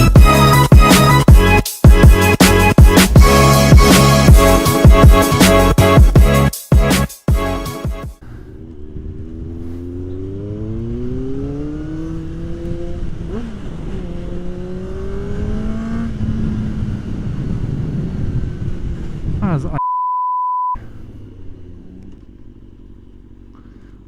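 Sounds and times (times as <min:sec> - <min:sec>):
motorcycle engine accelerating: 0:08.2 - 0:19.4, 0:20.8 - 0:24.0
wind noise: 0:15.0 - 0:19.8.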